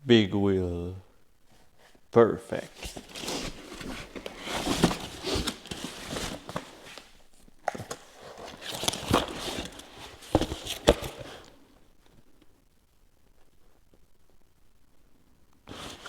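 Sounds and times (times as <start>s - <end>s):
packaging rustling: 2.7s - 11.6s, 15.7s - 16.0s.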